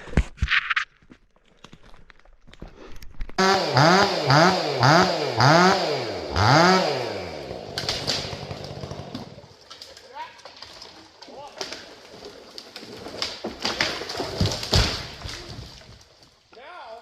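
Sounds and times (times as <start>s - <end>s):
chainsaw engine revving: 3.4s - 9.5s.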